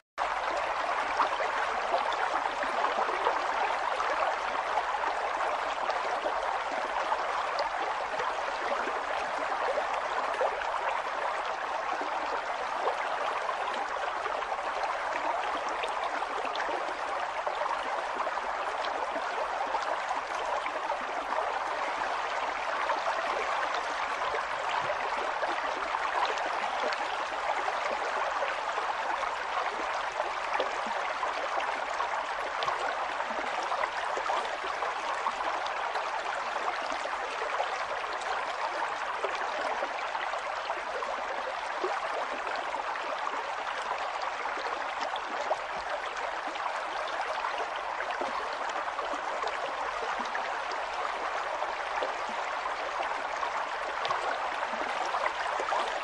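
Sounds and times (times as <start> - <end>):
river flowing over rocks: 28.7 - 56.0.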